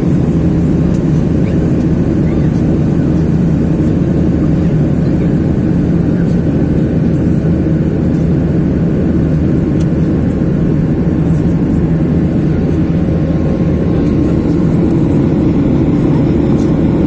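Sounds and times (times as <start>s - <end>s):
airliner cabin engine rumble: 0.0s - 17.0s.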